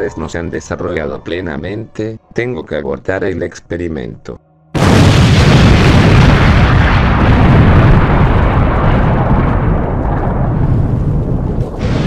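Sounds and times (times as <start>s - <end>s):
rumbling explosion blast: 4.8s - 12.0s.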